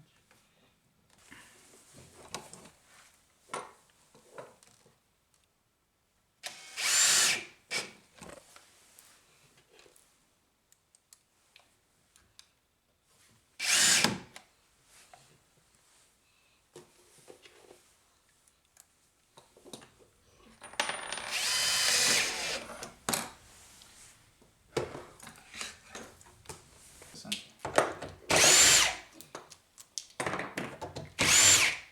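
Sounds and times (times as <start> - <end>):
power drill whining: 6.5 - 7.8, 13.6 - 14.2, 21.2 - 23.3, 28.3 - 29.1, 31.2 - 31.9.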